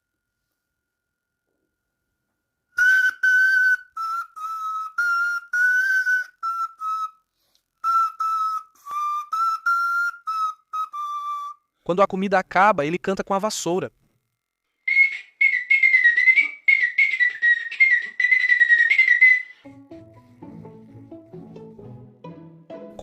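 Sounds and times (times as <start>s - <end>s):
whistle tune: 2.8s - 11.7s, 14.8s - 21.0s.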